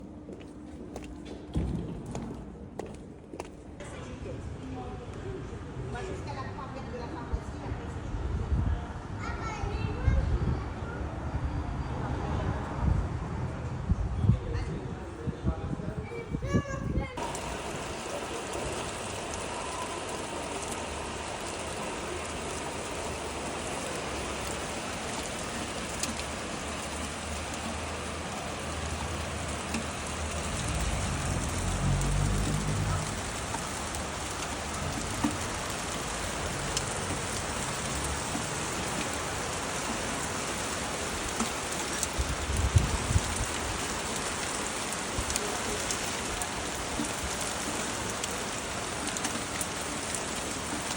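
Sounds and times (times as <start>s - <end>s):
rain pattering: 17.2s - 50.9s.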